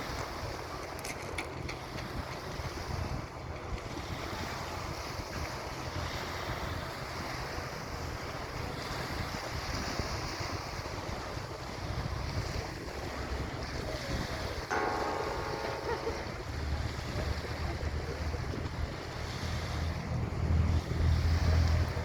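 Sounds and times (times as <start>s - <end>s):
rushing sea water: 0.0s - 22.0s
ferry engine rumble: 11.4s - 22.0s.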